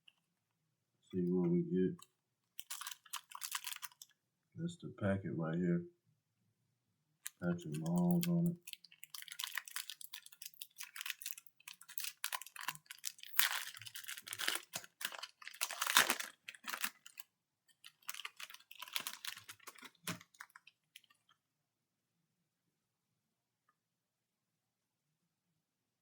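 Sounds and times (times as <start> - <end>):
card wrapper tearing and crinkling: 2.6 - 4.1, 7.3 - 17.2, 17.8 - 21.2.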